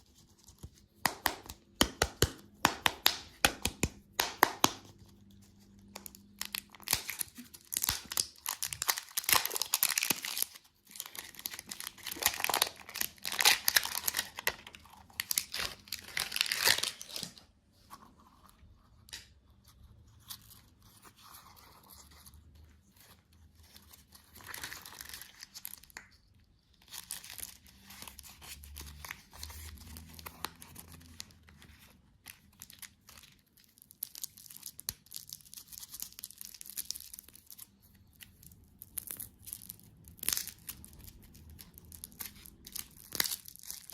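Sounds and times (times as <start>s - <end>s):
candy wrappers crinkling: 1.1s - 17.5s, 21.4s - 43.9s.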